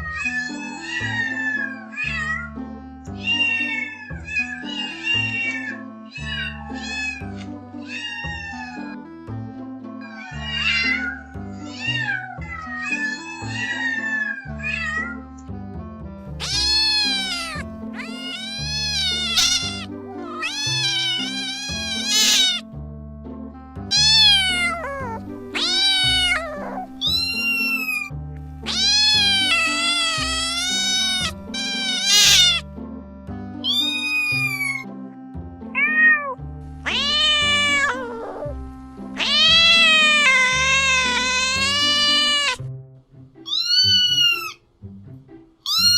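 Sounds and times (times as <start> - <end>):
cats meowing: 0.0 - 2.6, 3.2 - 9.0, 10.0 - 15.2, 16.3 - 22.6, 23.9 - 32.7, 33.6 - 34.8, 35.8 - 38.6, 39.2 - 42.6, 43.5 - 44.6, 45.6 - 45.9
background music with bass: 21.5 - 27.5, 28.1 - 41.9.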